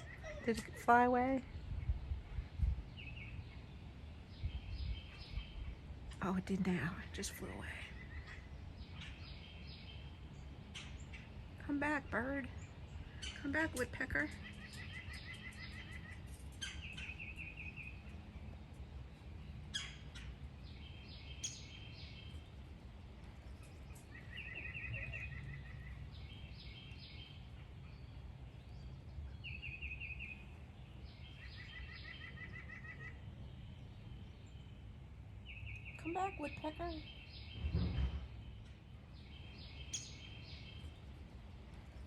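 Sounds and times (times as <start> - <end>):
faint low rumble: 0.1 - 14.7
bird trills: 19.7 - 22.4.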